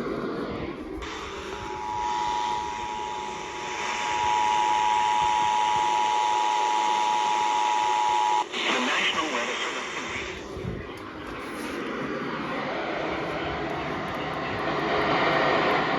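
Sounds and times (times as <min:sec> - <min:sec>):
radio static hiss: 0:00.0 - 0:15.9
two-tone alarm: 0:01.0 - 0:08.6.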